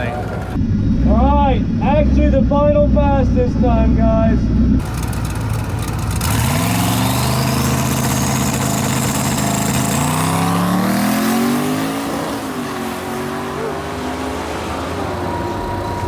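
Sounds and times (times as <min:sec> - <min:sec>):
turbo whine: 0:00.0 - 0:16.0
car engine revving hard: 0:04.8 - 0:16.0.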